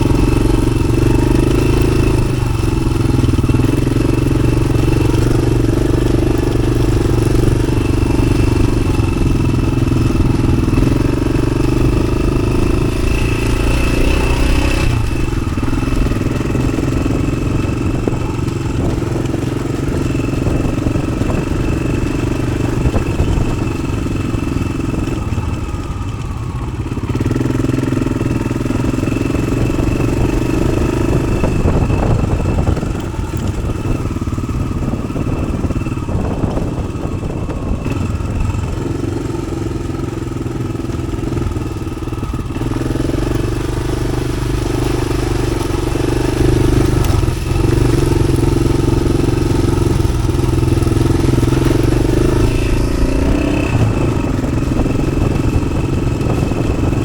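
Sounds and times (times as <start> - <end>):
motorcycle engine revving off-road: 0.0 - 57.0.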